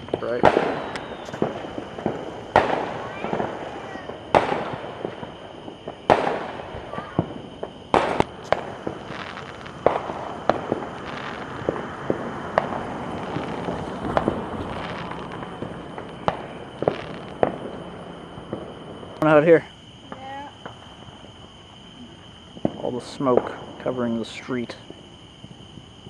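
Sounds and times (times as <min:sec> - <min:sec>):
fireworks bangs and pops: 0:00.0 - 0:26.0
fireworks crackling: 0:00.0 - 0:26.0.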